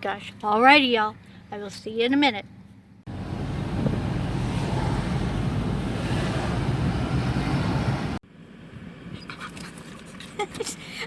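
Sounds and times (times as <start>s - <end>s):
wind and road noise of moving car: 3.1s - 9.9s.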